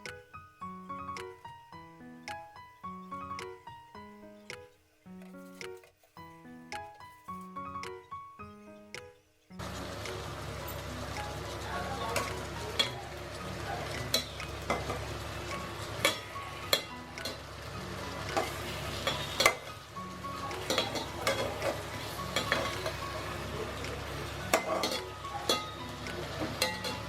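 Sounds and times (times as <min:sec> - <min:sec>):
food sizzling in hot oil: 0:09.6 - 0:27.0
metal spatula scraping a pan: 0:18.4 - 0:19.7.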